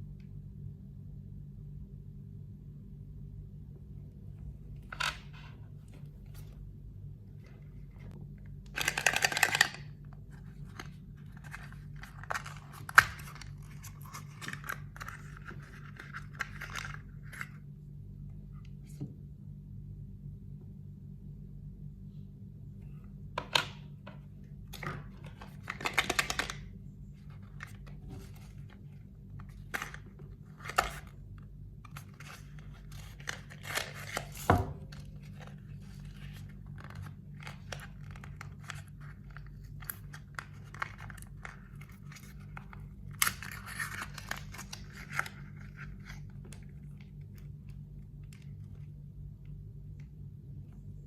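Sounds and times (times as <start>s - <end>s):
steady low hum: 0.0s - 51.0s
packaging tearing and crinkling: 31.9s - 47.0s.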